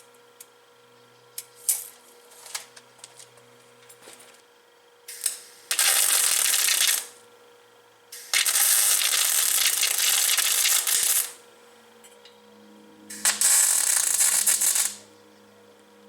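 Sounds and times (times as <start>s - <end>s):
faint hum: 0.0s - 16.0s
arc welding crackling sizzle: 5.0s - 7.3s, 8.1s - 11.5s, 13.1s - 15.1s.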